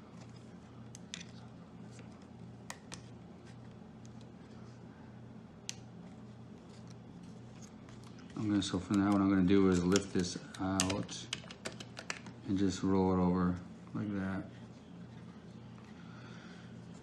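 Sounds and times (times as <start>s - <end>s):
low steady hum: 0.0s - 17.0s
laptop parts clicking and tapping: 9.8s - 12.4s.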